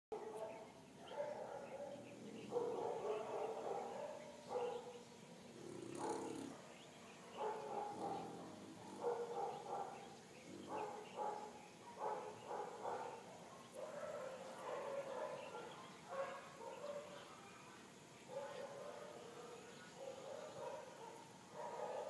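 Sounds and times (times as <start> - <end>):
dog snoring: 5.6 - 6.6.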